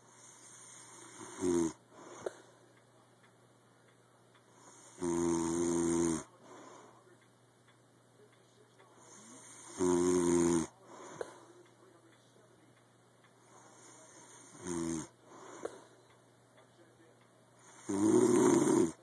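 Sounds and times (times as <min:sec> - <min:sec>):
quiet breathing: 0:00.0 - 0:03.2, 0:03.9 - 0:07.4, 0:08.2 - 0:19.0
loud pitched snoring: 0:00.1 - 0:01.8, 0:04.7 - 0:06.3, 0:09.2 - 0:10.7, 0:13.9 - 0:15.1, 0:17.6 - 0:19.0.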